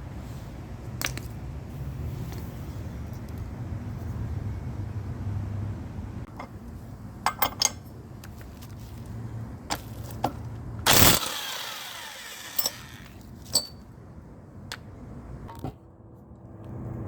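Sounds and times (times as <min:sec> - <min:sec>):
tools clicking and knocking: 0:07.3 - 0:07.8, 0:09.7 - 0:13.9.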